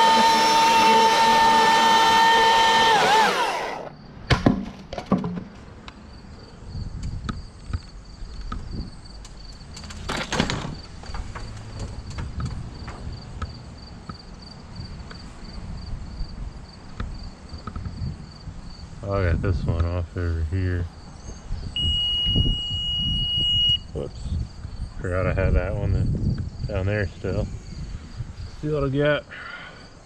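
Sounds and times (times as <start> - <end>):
battery chainsaw whining: 0.0 - 3.9
crickets chirping: 3.8 - 4.3, 5.4 - 30.0
wood cracking and knocking: 4.3 - 5.7, 9.5 - 13.2.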